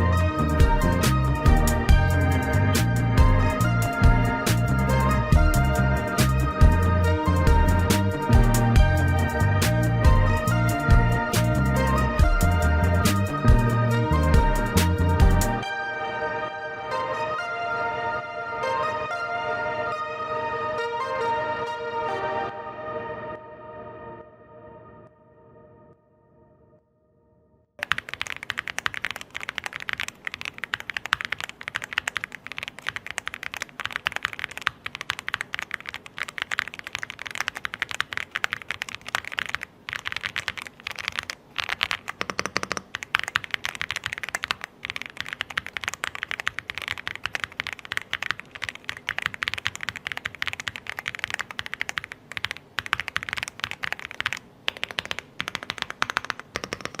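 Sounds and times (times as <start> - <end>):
mechanical keyboard typing: 27.8 - 57.0.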